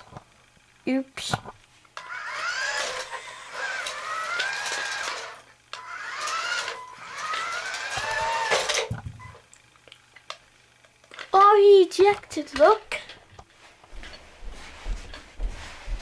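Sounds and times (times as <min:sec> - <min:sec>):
toy car electric motor whining: 0:02.0 - 0:08.9.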